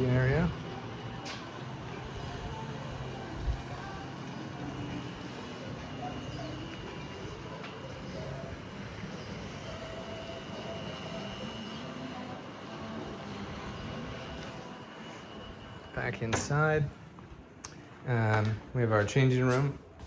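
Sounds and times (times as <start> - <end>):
thin high steady tone: 0.0 - 16.9
faint distant voices: 0.0 - 20.0
outdoor background hum: 0.0 - 20.0.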